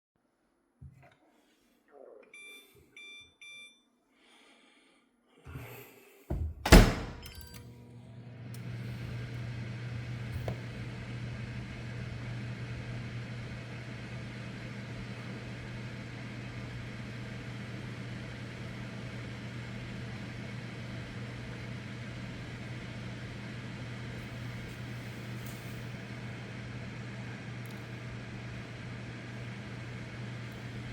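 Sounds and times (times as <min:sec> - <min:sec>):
microwave keypad beeps: 0:02.3 - 0:03.9, 0:07.0 - 0:07.6
microwave oven humming: 0:05.5 - 0:30.9.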